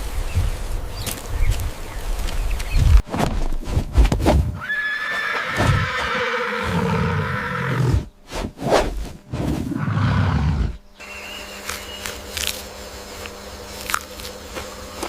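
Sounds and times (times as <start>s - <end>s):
horse whinnying: 4.6s - 8.1s.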